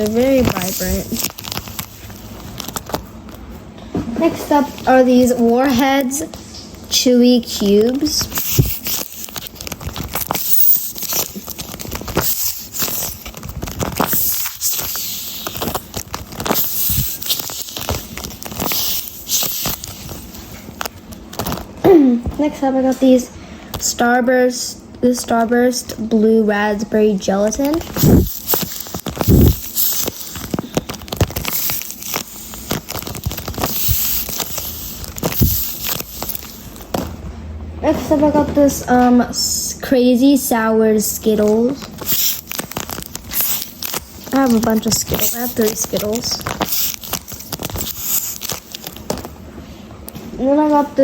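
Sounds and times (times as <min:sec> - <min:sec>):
paper squishy crinkling: 0:00.0 - 0:03.6, 0:04.2 - 0:21.8, 0:27.3 - 0:37.2, 0:41.3 - 0:50.2.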